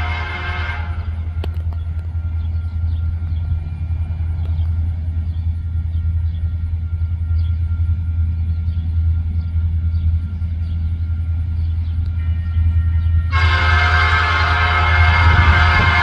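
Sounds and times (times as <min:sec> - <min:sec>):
locomotive air horn chord: 0:00.0 - 0:01.4, 0:12.1 - 0:16.0
train rumbling: 0:00.0 - 0:16.0.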